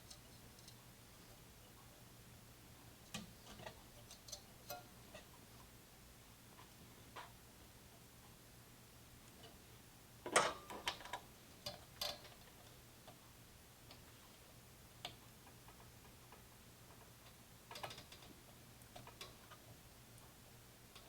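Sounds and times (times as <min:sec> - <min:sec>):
small clicks and taps: 0:15.0 - 0:21.0.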